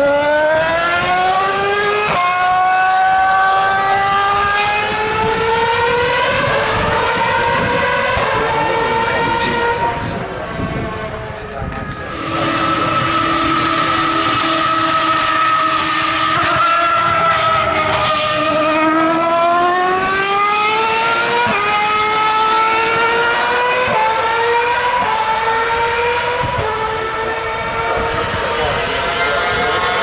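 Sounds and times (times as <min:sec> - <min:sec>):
racing car engine at high revs: 0:00.0 - 0:30.0.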